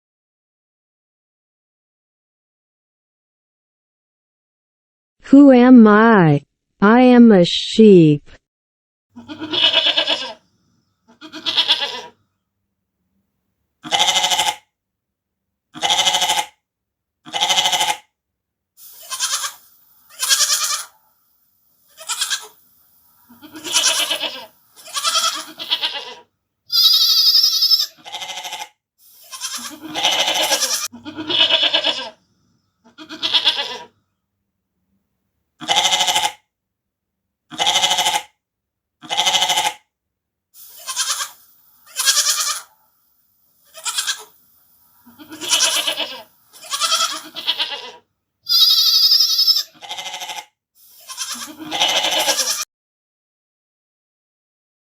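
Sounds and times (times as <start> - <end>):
sheep bleating: 9.2 - 10.4, 11.1 - 12.2, 13.8 - 14.6, 15.8 - 16.6, 17.3 - 18.1, 18.8 - 21.0, 21.8 - 22.6, 23.2 - 32.2, 32.9 - 33.9, 35.6 - 36.4, 37.5 - 38.3, 39.0 - 39.8, 40.6 - 42.8, 43.6 - 44.4, 45.0 - 52.6.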